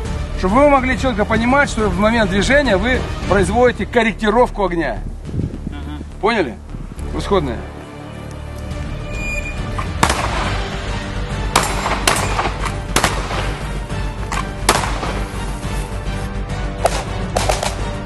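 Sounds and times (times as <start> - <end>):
background music: 0.0 - 18.0
pistol shots: 10.0 - 10.6, 11.5 - 13.7, 14.3 - 15.3, 16.8 - 17.8.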